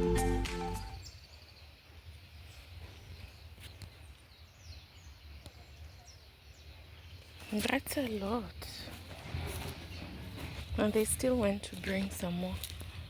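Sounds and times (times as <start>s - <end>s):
background music: 0.0s - 1.0s.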